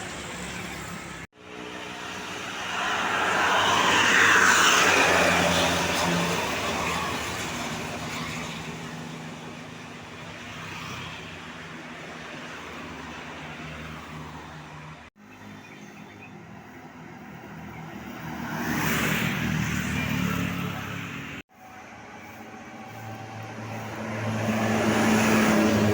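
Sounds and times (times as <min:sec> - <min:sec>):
vehicle passing by: 0:16.6 - 0:25.9.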